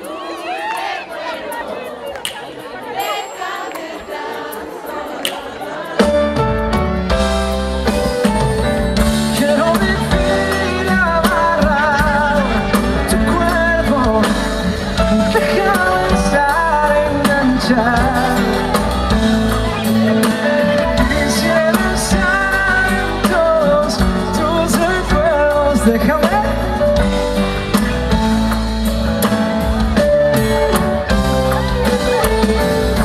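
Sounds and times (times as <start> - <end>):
live band playing: 0.0 - 33.0
person singing: 9.0 - 33.0.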